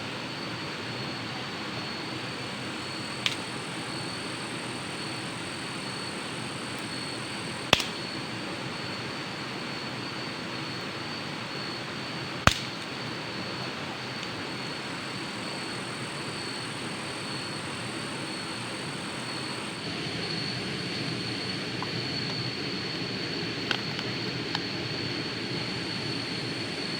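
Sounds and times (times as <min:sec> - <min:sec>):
high-pitched whine: 0:00.0 - 0:26.9
sharp clicks: 0:03.2 - 0:03.5, 0:07.7 - 0:08.0, 0:12.5 - 0:12.8.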